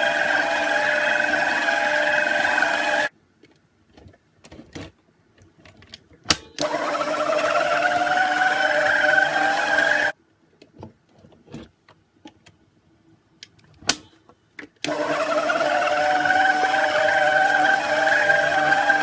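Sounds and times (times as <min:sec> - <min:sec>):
electric hand mixer whining: 0:00.0 - 0:03.1, 0:06.6 - 0:10.1, 0:14.9 - 0:19.0.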